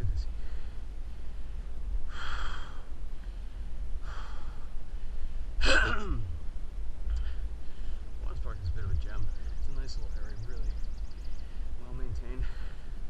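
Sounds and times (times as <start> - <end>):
man breathing hard: 0.3 - 5.6, 7.1 - 8.2, 12.4 - 13.0.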